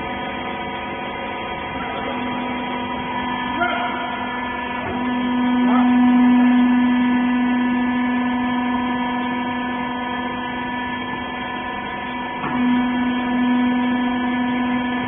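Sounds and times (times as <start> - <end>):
electric motor and pump humming: 0.0 - 15.0.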